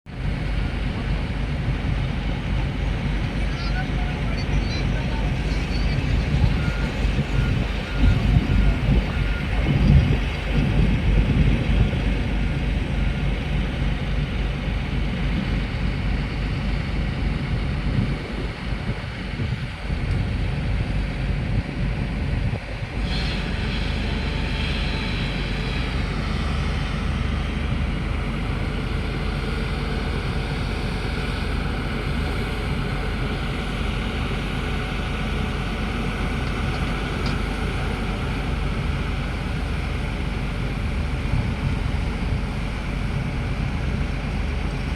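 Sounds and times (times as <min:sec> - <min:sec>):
excavator diesel engine droning: 0:00.1 - 0:44.9
high-pitched whine: 0:00.4 - 0:20.1.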